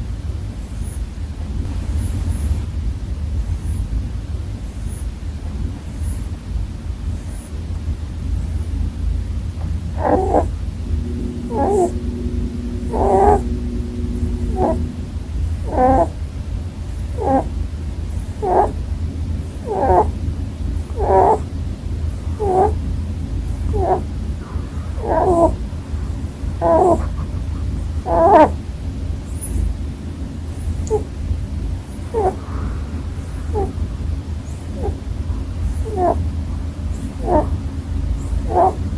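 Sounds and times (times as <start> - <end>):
steady low hum: 0.0 - 38.9
rabbit snoring: 8.3 - 28.6, 30.4 - 38.9.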